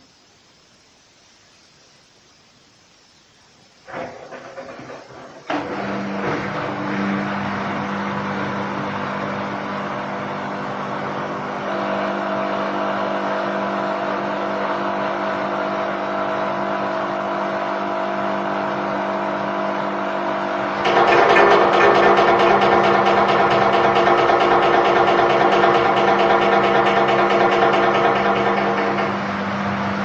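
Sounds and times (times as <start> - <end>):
washing machine spinning: 3.9 - 30.0
rapid rhythmic rattling clatter: 20.8 - 29.4.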